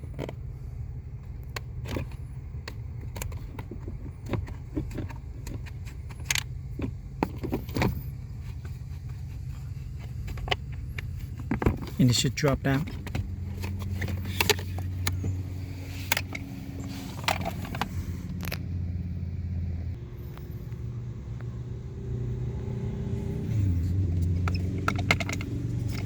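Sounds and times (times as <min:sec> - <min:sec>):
low engine hum: 0:00.0 - 0:26.0
clicks and knocks from handling: 0:12.8 - 0:15.4.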